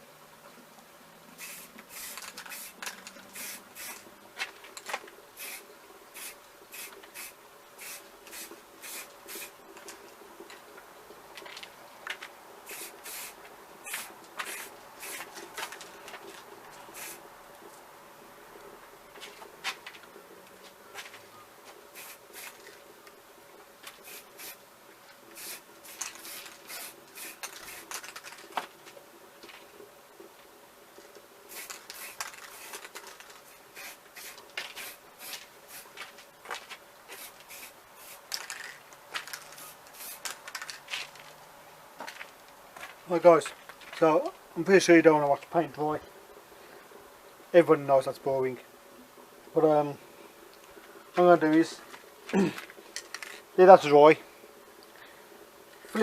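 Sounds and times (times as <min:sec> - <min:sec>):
spray can hissing in puffs: 0:01.4 - 0:04.1, 0:05.4 - 0:09.6, 0:12.6 - 0:15.3, 0:16.9 - 0:17.2, 0:21.9 - 0:22.7, 0:23.9 - 0:24.6, 0:25.3 - 0:28.3, 0:31.5 - 0:36.0, 0:37.1 - 0:40.6.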